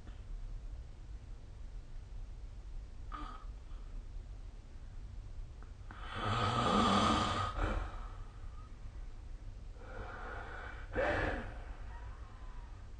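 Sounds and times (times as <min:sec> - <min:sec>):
person snoring: 0:05.9 - 0:08.0.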